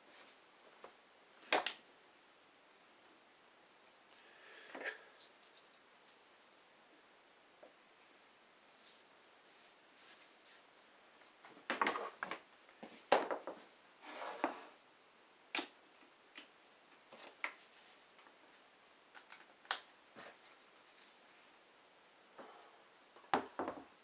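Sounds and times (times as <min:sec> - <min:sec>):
wood and tools clicking and knocking: 0:11.5 - 0:13.6, 0:23.2 - 0:23.9.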